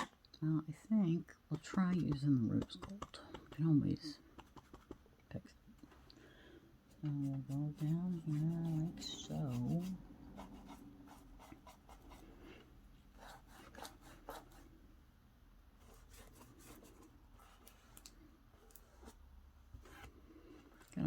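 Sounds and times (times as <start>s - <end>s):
small brush scratching and tapping: 1.5s - 5.1s, 7.0s - 12.0s.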